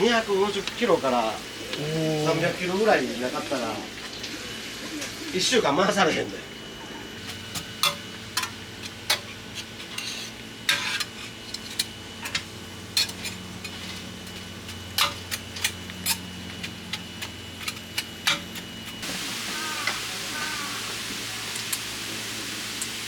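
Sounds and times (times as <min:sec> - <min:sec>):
meat sizzling: 0:00.0 - 0:23.0
metal spatulas scraping griddle: 0:07.2 - 0:19.0.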